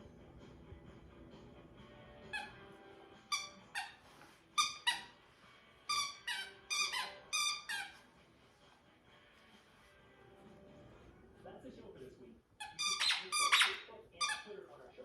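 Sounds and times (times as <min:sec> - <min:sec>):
squeaky dog toy squeaking: 0:02.3 - 0:02.7, 0:03.3 - 0:04.0, 0:04.6 - 0:05.2, 0:05.9 - 0:08.1, 0:12.6 - 0:14.6.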